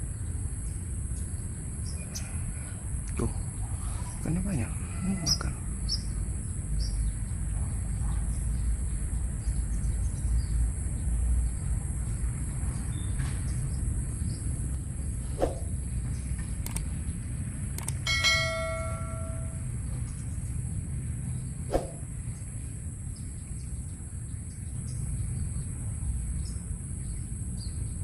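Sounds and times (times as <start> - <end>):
faint clicks: 16.6 - 16.9, 17.8 - 18.0
short bright ringing tone: 18.0 - 19.7.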